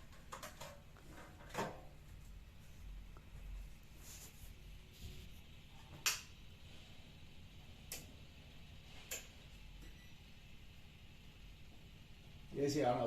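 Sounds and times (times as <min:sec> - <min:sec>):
air conditioner switch clicks: 0:06.0 - 0:06.4, 0:07.9 - 0:08.1, 0:09.1 - 0:09.3.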